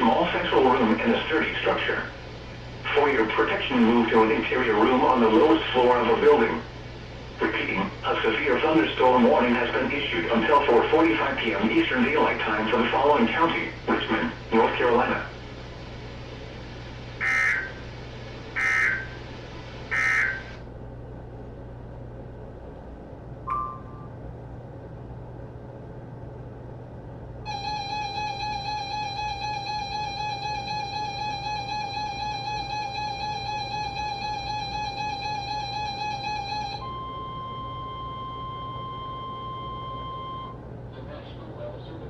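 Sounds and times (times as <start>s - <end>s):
digital data bursts screeching: 17.2s - 17.8s, 18.6s - 19.1s, 19.9s - 20.5s
steady single-pitch alert tone: 23.4s - 24.1s, 27.5s - 40.6s
warbling electronic alert tone: 27.5s - 40.5s.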